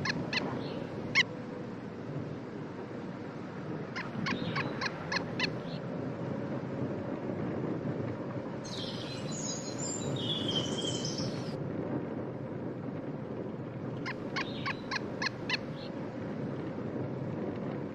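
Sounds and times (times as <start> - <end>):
birds chirping: 0.0 - 1.3, 4.0 - 5.8, 8.6 - 11.6, 14.1 - 15.9.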